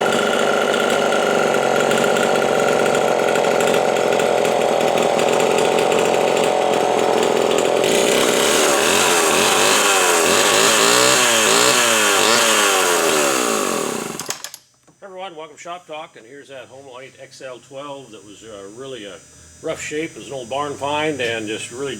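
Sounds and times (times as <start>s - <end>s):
chainsaw revving: 0.0s - 14.6s.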